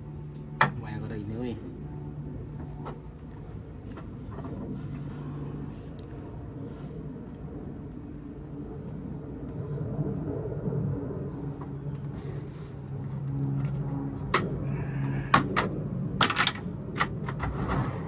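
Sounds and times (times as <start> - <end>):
steady low hum: 0.0 - 18.0
parts knocking and clicking: 15.3 - 17.8.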